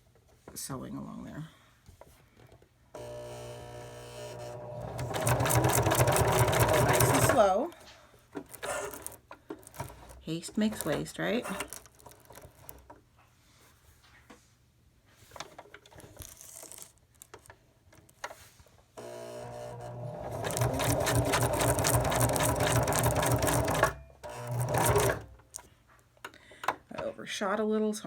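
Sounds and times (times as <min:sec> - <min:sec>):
sewing machine stitching: 0:03.0 - 0:07.6, 0:08.4 - 0:12.9, 0:19.0 - 0:25.4.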